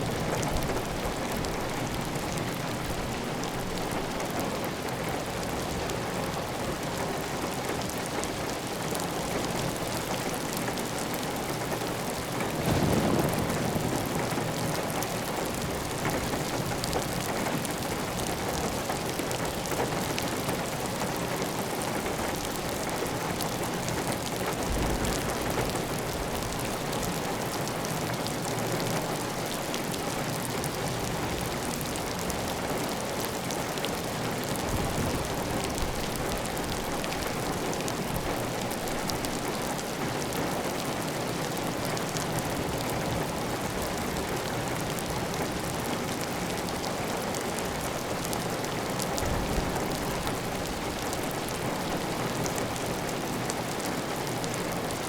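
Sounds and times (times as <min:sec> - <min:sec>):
heavy rain on a tile roof: 0:00.0 - 0:55.0
low rumbles: 0:12.6 - 0:16.3.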